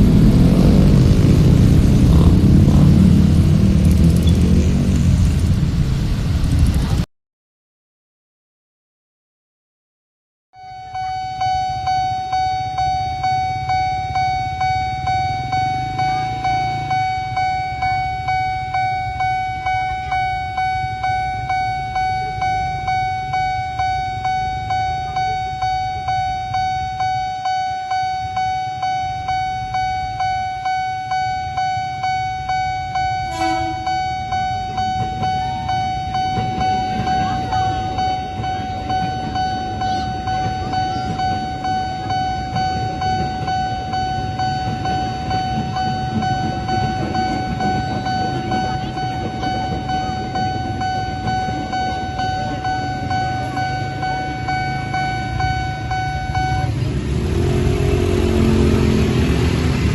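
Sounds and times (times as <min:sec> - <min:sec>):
level-crossing alarm pulsing: 0:00.0 - 0:04.8, 0:10.6 - 0:59.9
train rumbling past: 0:00.0 - 0:07.0, 0:28.1 - 0:59.9
train horn toot: 0:33.2 - 0:34.2.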